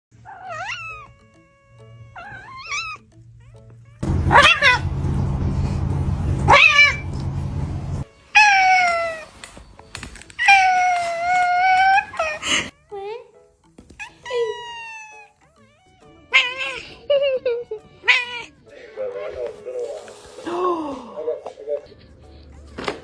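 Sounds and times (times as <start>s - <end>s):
angry cats meowing and yowling: 0.2s - 1.2s, 2.0s - 3.0s, 4.0s - 9.3s, 10.4s - 12.7s, 14.0s - 17.1s, 17.9s - 18.6s
rough noisy rumble: 4.0s - 8.0s.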